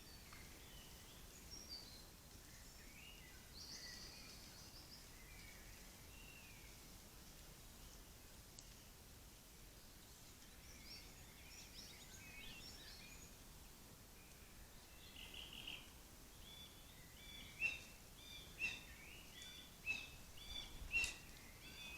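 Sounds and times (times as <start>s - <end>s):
birds chirping: 14.2s - 21.9s
sharp bird calls: 16.5s - 21.9s.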